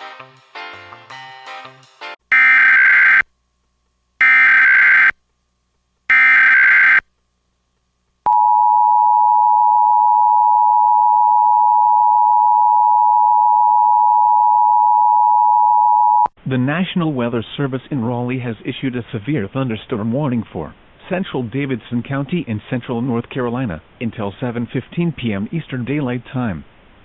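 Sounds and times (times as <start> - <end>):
music: 0.0 - 2.2.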